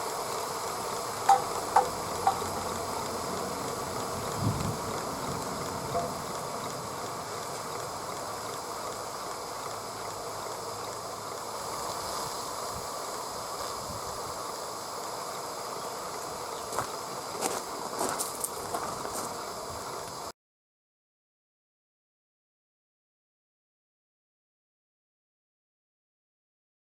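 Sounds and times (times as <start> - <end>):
steam locomotive hissing: 0.0 - 20.3.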